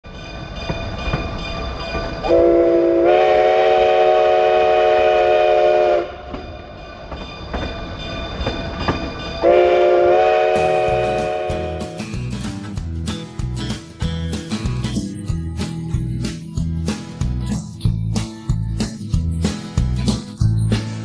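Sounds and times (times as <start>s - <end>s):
train rumble and clicks: 0.0s - 21.0s
steam locomotive whistle: 2.2s - 6.7s, 9.4s - 12.2s.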